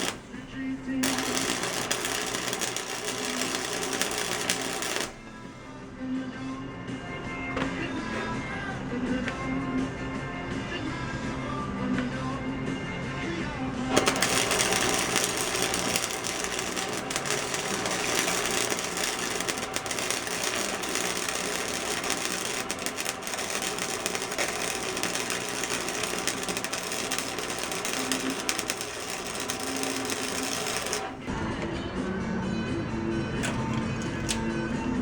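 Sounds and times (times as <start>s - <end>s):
welding arc crackling: 0.0s - 5.2s, 14.0s - 31.3s.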